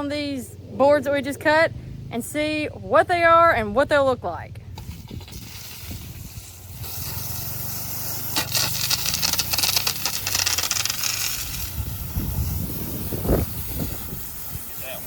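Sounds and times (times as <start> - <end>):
water scrubbing hiss on boards: 4.8 - 15.0.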